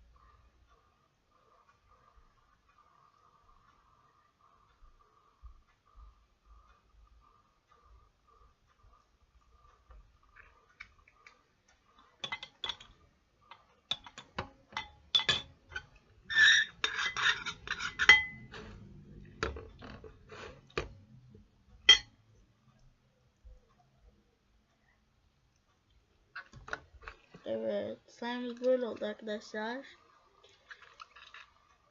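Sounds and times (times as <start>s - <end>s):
spoon clinking and scraping plate: 13.5s - 18.9s, 21.9s - 22.1s.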